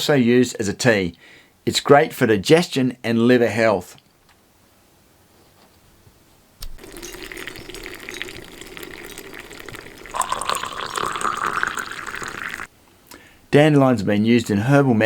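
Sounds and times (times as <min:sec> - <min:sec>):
water poured into cup: 0:06.8 - 0:12.7.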